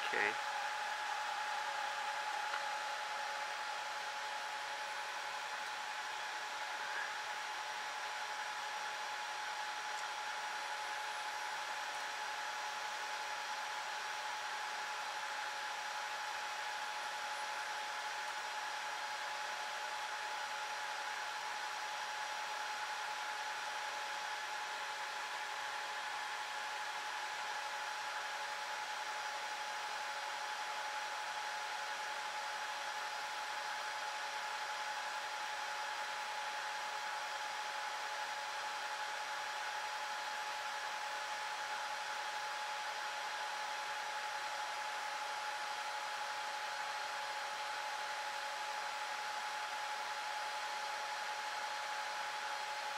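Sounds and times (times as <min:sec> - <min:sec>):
constant whine: 0:00.0 - 0:12.2
server cooling fans running: 0:00.0 - 0:52.9.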